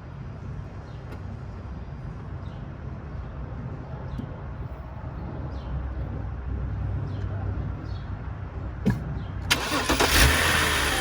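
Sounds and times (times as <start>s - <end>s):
car engine idling with knock: 8.8s - 9.2s.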